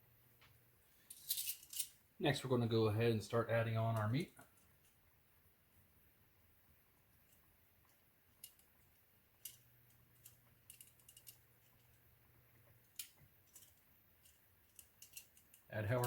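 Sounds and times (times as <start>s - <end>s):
faint low hum: 0.0s - 16.0s
faint utensil clicks: 12.6s - 15.7s.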